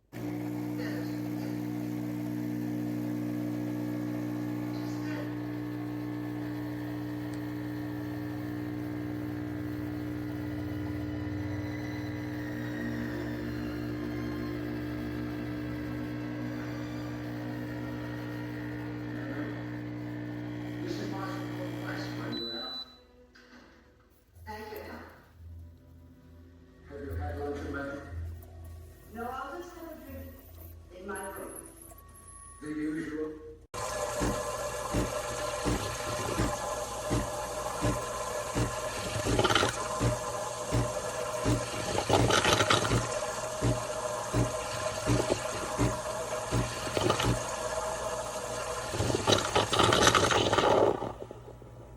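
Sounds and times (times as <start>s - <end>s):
espresso machine pump humming: 0.0s - 22.7s, 33.8s - 51.9s.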